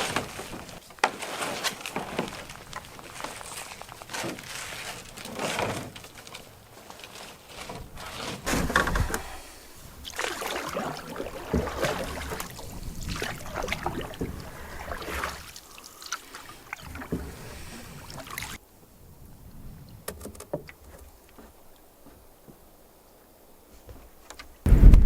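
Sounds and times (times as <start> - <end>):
paddle strokes splashing water: 9.7 - 18.6
water dripping: 10.0 - 17.4.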